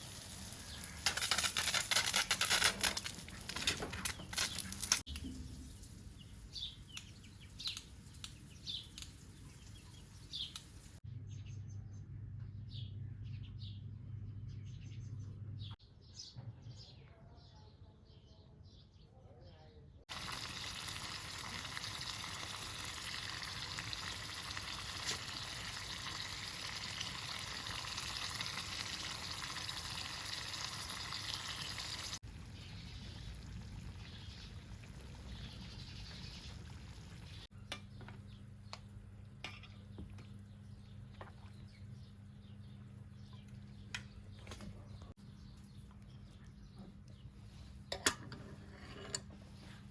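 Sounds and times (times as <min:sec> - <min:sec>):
food sizzling over a fire: 0:00.0 - 0:11.0, 0:20.1 - 0:37.5
birds chirping: 0:02.2 - 0:20.0, 0:30.6 - 0:47.9.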